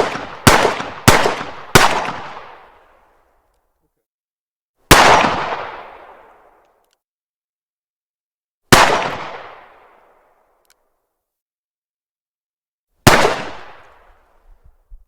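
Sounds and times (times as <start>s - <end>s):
pistol shots echoing: 0.0s - 2.9s, 4.9s - 6.2s, 8.7s - 9.9s, 13.1s - 14.1s.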